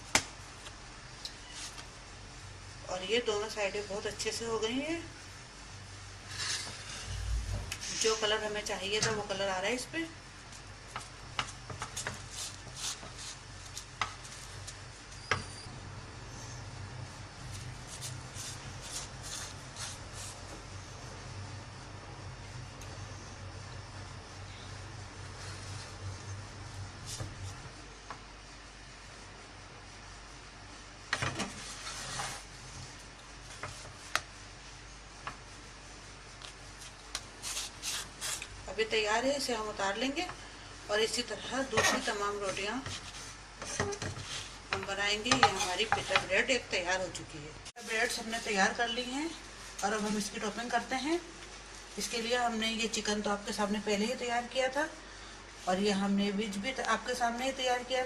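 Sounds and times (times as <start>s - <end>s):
steady low hum: 0.0s - 58.0s
light clicks and scrapes at a pan: 41.7s - 46.3s.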